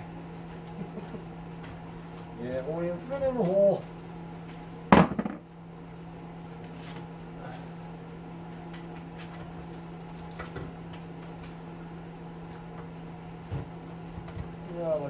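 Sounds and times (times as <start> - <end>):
steady low hum: 4.0 - 6.2.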